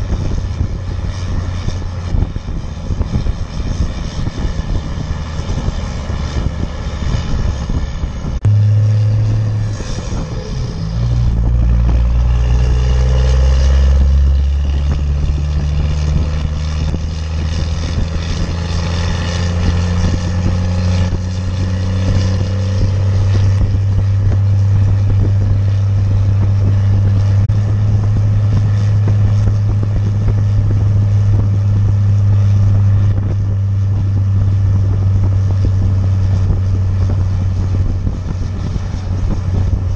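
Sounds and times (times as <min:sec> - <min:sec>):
diesel engine running under load: 0:00.0 - 0:39.9.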